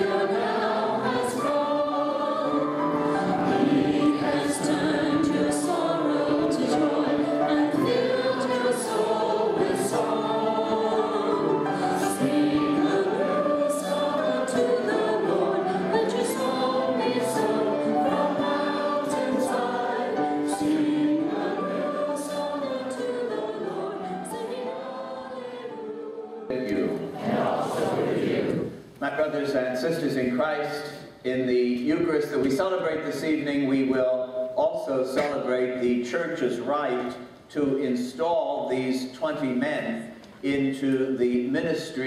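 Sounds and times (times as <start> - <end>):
choir singing a hymn: 0.0 - 28.8.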